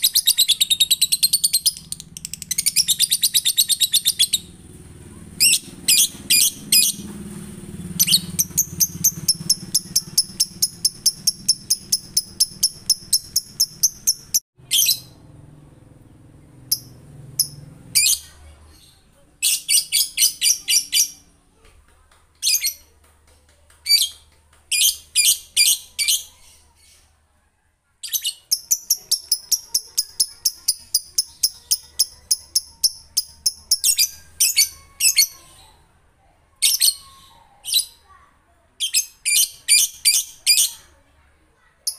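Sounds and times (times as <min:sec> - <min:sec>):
lovebird shrill chirps: 0:00.0 - 0:04.5, 0:28.1 - 0:35.6.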